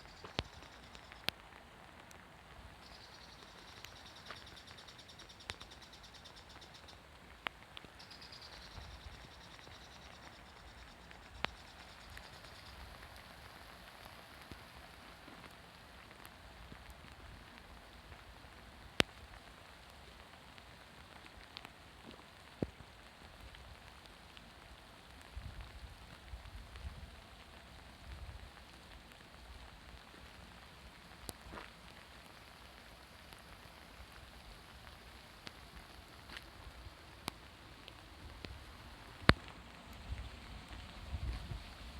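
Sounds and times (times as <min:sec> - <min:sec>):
rain patter: 0:00.0 - 0:41.9.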